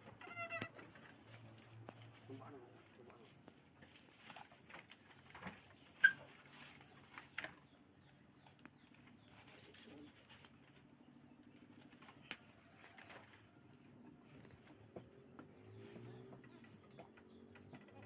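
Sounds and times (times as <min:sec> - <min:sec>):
soft knocks and rustles: 0:00.0 - 0:07.7, 0:11.7 - 0:18.0.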